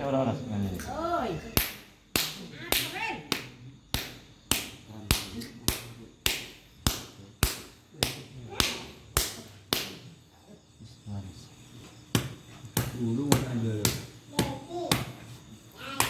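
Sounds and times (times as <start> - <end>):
hand slapping wet skin: 1.6 - 10.0, 12.2 - 15.3.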